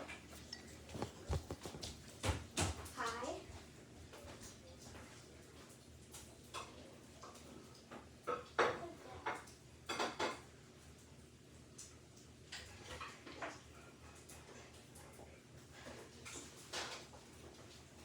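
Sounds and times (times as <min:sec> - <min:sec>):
objects clattering: 0:00.1 - 0:02.0.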